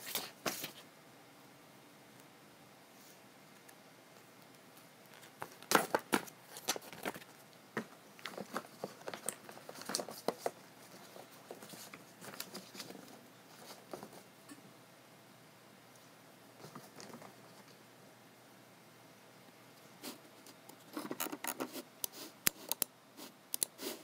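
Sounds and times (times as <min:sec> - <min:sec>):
keyboard and mouse clicks: 0:23.5 - 0:23.8.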